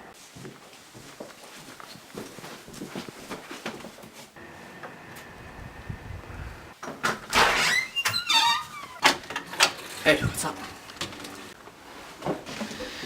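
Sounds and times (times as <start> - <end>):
door opening: 6.8 - 11.6.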